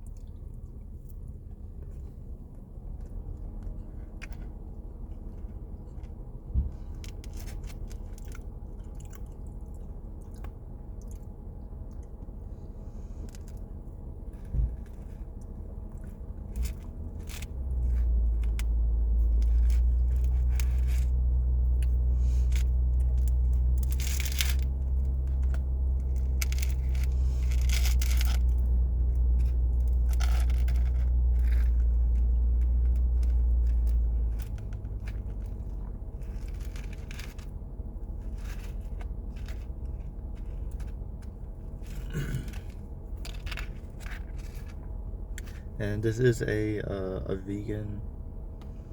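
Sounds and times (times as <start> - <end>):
chewing with crunches: 0.0 - 45.8
steady low rumble: 0.0 - 48.9
food tearing: 14.3 - 45.7.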